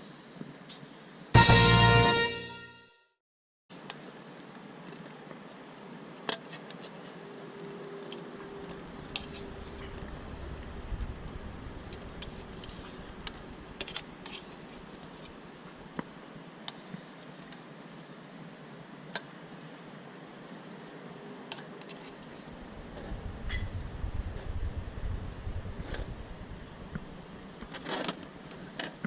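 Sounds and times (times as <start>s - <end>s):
faint hum: 7.2s - 16.0s, 22.3s - 28.6s
steady low hiss: 8.3s - 16.7s, 22.2s - 28.9s
low rumble: 8.8s - 13.8s, 22.6s - 27.7s.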